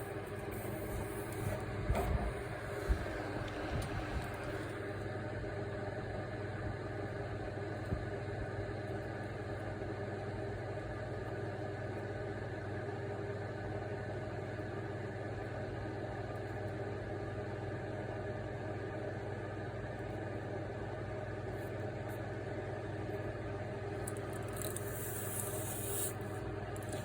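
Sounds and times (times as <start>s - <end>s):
low mechanical hum: 0.0s - 27.0s.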